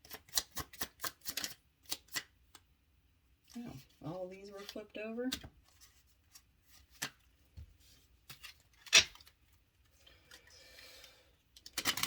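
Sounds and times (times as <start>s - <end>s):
cards tapping and clicking: 0.0s - 2.7s.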